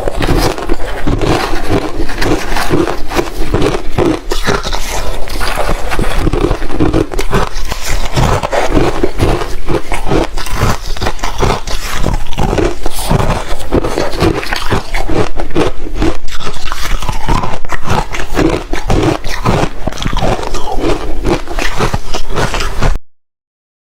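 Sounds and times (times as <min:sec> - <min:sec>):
ice crunching being chewed: 0:00.0 - 0:23.0.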